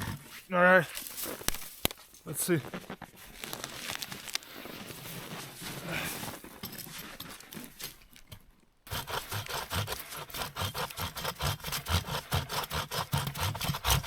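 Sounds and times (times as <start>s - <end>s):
faint rustles: 0.3s - 8.1s
hand saw cutting branch: 8.9s - 14.0s.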